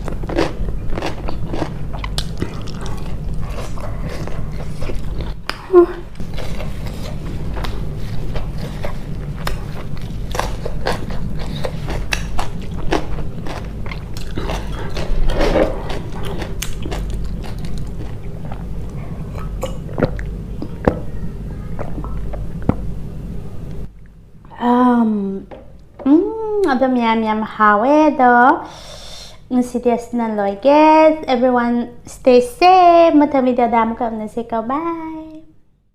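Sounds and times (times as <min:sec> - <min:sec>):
person chewing crunchy food: 0:00.0 - 0:21.0
steady low hum: 0:00.0 - 0:35.9.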